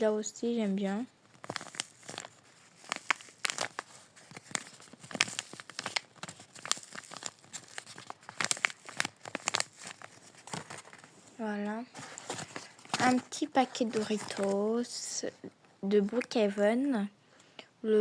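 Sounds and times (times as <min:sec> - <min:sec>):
squishy toy crinkling: 0:01.3 - 0:11.3, 0:11.9 - 0:14.8, 0:16.0 - 0:16.5.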